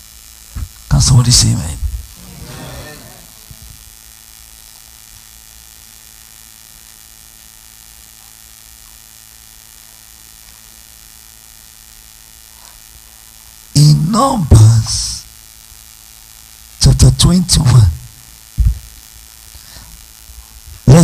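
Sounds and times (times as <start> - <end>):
electrical mains hum: 0.0 - 21.0.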